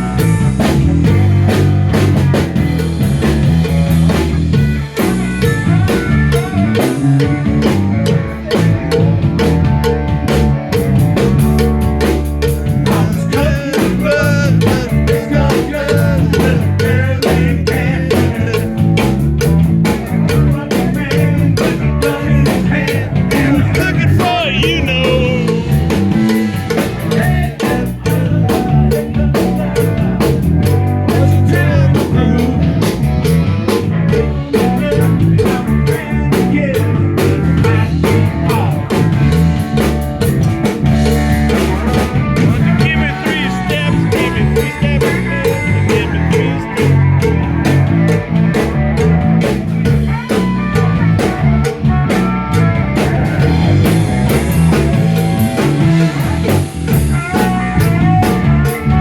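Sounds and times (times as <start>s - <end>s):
rock music with drums and guitar: 0.0s - 59.0s.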